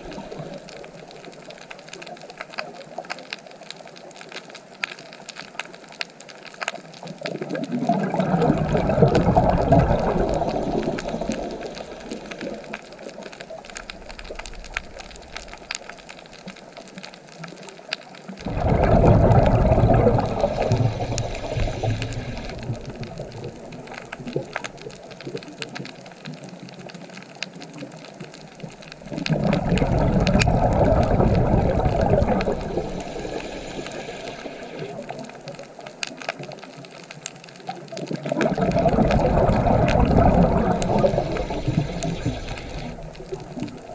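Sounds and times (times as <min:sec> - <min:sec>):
steady hiss of water: 0:00.0 - 0:43.9
ocean waves surging: 0:07.8 - 0:12.8, 0:18.4 - 0:24.7, 0:29.0 - 0:35.4, 0:38.3 - 0:43.9.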